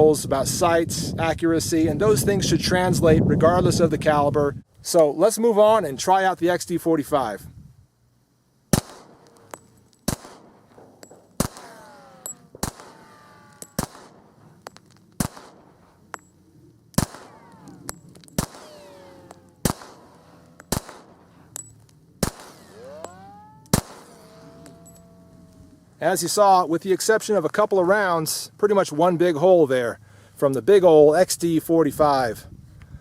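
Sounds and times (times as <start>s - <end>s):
pistol shots: 8.7s - 16.3s, 16.9s - 25.0s
ringing after gunshots: 8.8s - 25.8s.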